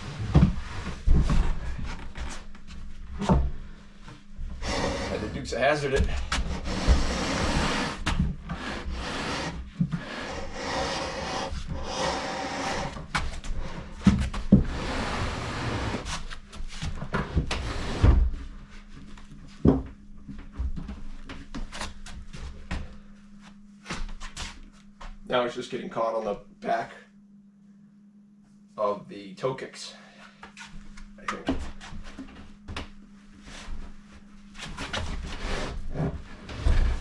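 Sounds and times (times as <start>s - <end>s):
wooden cabinet scraping: 4.6s - 13.0s, 13.6s - 16.2s, 34.8s - 37.0s.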